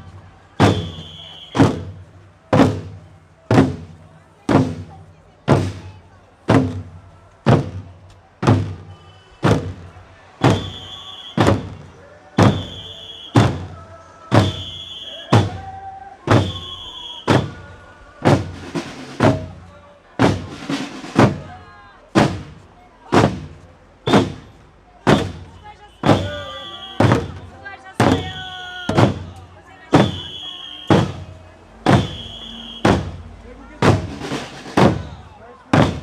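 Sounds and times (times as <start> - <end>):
marching drum strikes: 0.0 - 36.0.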